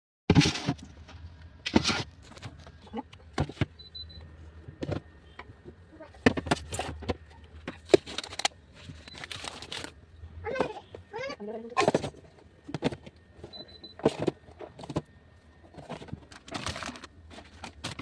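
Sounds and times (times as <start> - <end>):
low steady hum: 0.3 - 18.0
groceries clicking and rustling: 4.6 - 10.8, 11.8 - 18.0.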